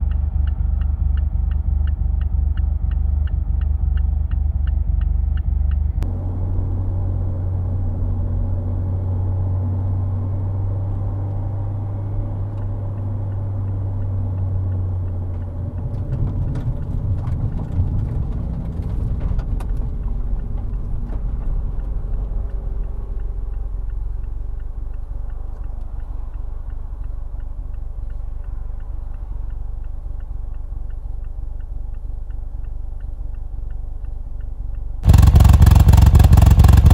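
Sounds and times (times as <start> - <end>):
fast regular ticking: 22.1 - 36.9
car engine idling roughly: 35.1 - 36.9.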